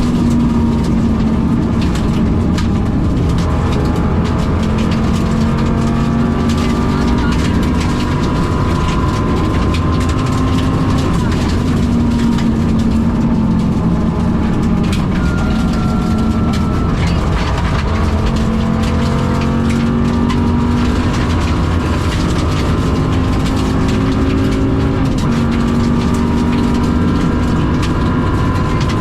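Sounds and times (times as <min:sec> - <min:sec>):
gearbox whine: 0:00.0 - 0:29.0
rally car engine misfiring: 0:00.0 - 0:29.0
sharp clicks and knocks: 0:00.0 - 0:29.0.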